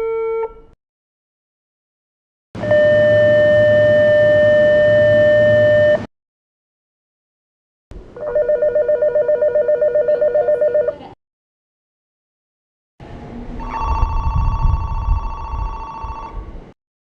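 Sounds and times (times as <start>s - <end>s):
steady electronic tone: 2.6s - 6.1s
warbling two-note electronic bell: 13.6s - 16.3s.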